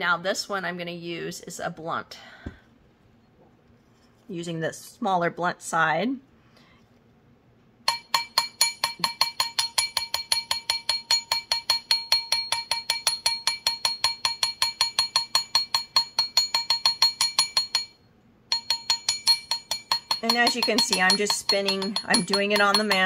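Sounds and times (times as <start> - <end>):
light hammer blows on metal ring: 7.9 - 23.0.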